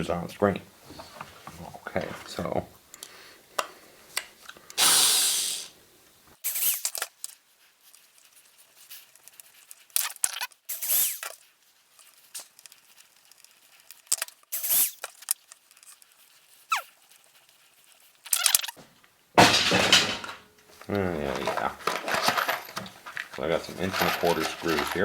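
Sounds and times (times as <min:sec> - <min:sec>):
tools scraping and clattering: 0:19.4 - 0:25.0.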